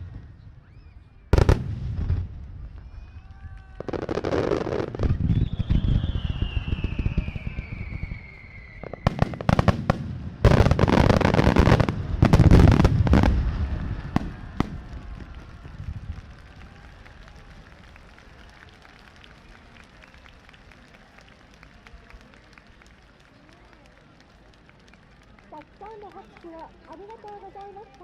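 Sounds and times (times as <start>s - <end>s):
firework bangs and crackling: 0.0s - 21.6s
falling firework whistle: 0.5s - 2.0s, 2.8s - 9.8s.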